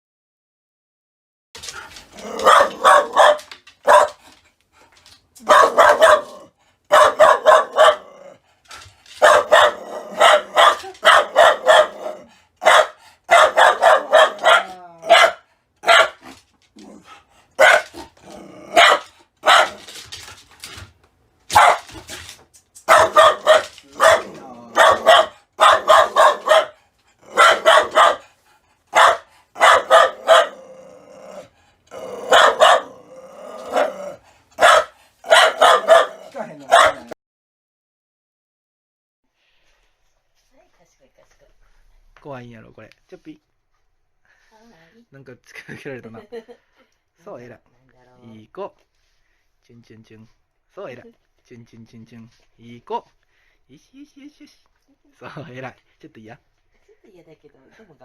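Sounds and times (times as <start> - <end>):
dog barking: 2.2 - 4.2, 5.4 - 8.4, 9.2 - 16.4, 17.6 - 18.1, 18.7 - 19.8, 21.5 - 22.0, 22.9 - 28.3, 28.9 - 30.8, 32.1 - 37.2.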